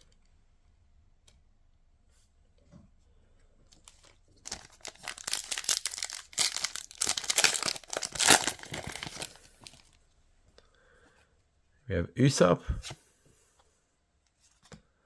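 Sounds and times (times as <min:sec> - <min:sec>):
foil wrapper tearing and crinkling: 0:04.4 - 0:09.9.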